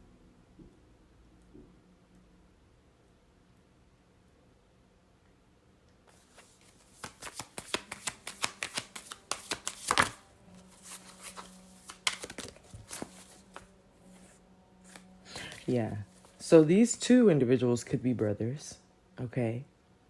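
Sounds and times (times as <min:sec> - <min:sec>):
cards being shuffled: 0:06.1 - 0:17.0.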